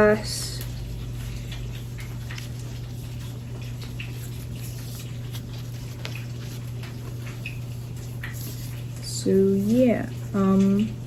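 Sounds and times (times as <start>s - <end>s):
low electrical hum: 0.0s - 11.0s
cloth rubbing on glass screen: 2.3s - 10.0s.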